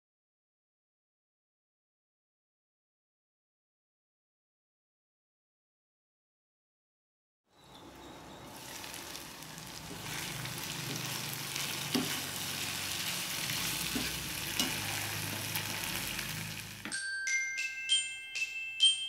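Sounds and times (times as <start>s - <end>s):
food sizzling in hot oil: 8.4s - 16.9s
glockenspiel chimes: 16.8s - 19.0s.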